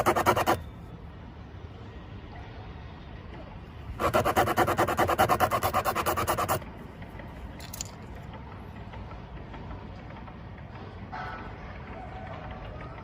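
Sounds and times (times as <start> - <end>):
rasp scraping tire rubber: 0.0 - 0.6, 4.0 - 6.6.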